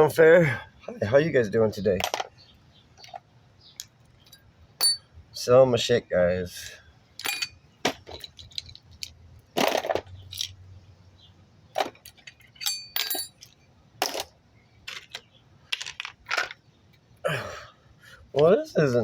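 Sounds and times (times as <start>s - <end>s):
small parts and tools clinking: 3.8s - 5.1s, 7.2s - 10.6s, 11.8s - 16.6s.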